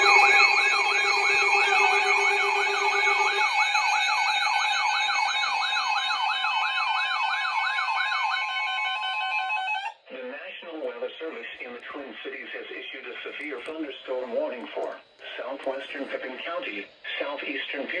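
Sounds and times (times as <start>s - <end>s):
lower steady tone: 0.0s - 9.8s
electronic warbling siren: 0.0s - 10.0s.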